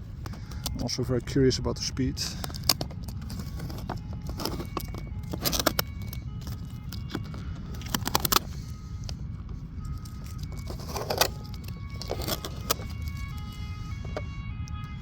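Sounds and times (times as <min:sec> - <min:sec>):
clatters and rattles of handling: 0:00.0 - 0:01.4, 0:02.2 - 0:15.0
steady low rumble: 0:00.0 - 0:15.0.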